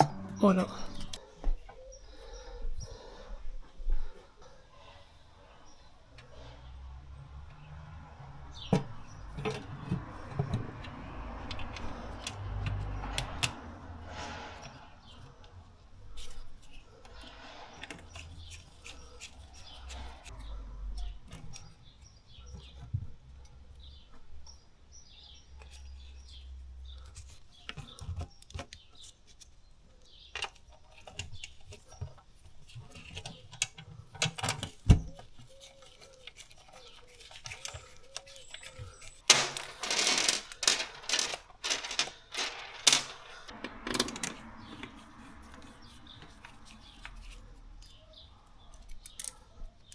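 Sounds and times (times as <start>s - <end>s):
metal scraping: 0.0s - 1.2s, 9.7s - 20.3s, 36.3s - 47.9s
metal parts clattering: 36.6s - 45.0s.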